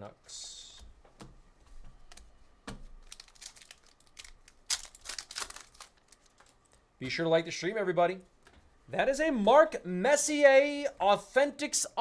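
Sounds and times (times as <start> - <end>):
foil wrapper crinkling: 3.0 - 6.8.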